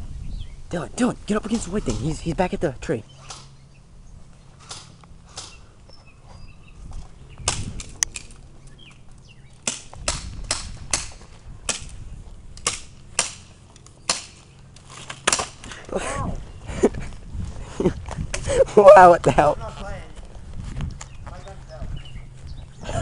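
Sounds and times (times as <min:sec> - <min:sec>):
airsoft gun shots: 0:04.6 - 0:05.6, 0:07.4 - 0:08.3.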